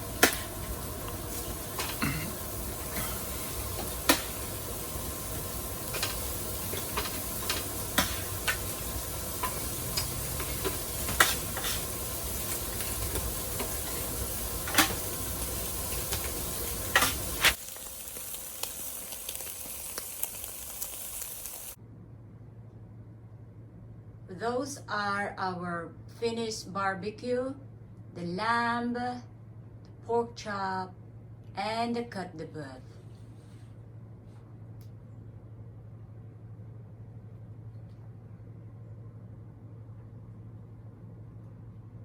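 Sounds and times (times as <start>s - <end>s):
fat crackling and popping: 0.0s - 21.8s
meat sizzling on a grill: 0.0s - 21.8s.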